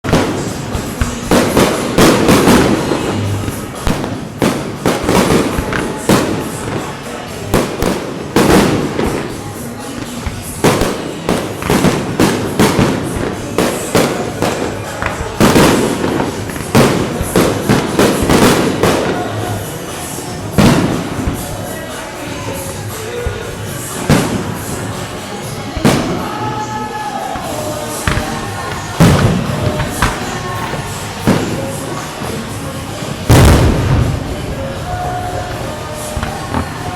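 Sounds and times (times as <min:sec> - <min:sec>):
fireworks shells bursting: 0:00.1 - 0:26.5
firework crackling: 0:00.1 - 0:36.9
echoing booms: 0:33.2 - 0:36.9.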